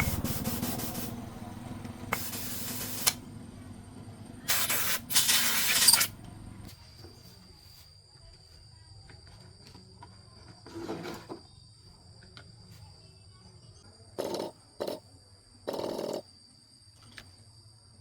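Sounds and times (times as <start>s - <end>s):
hissing spray bursts: 0.0s - 1.2s, 2.1s - 3.2s, 4.5s - 6.1s
low machine hum: 0.0s - 6.7s.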